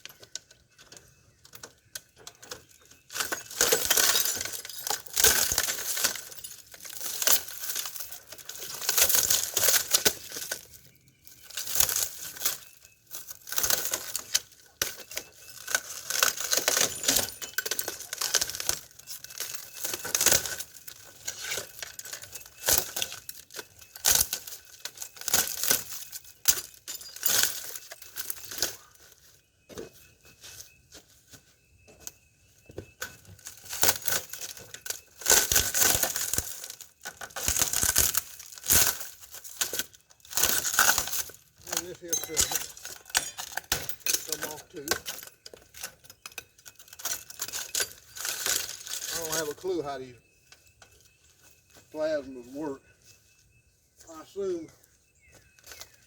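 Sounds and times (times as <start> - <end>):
glass crunching and crackling: 0.0 - 31.0, 31.6 - 52.8, 55.1 - 56.0.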